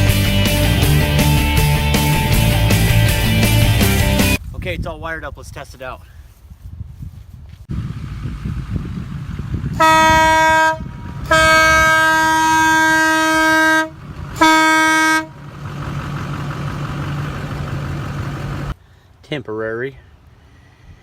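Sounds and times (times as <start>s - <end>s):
electric air horn blasts: 9.7s - 15.4s.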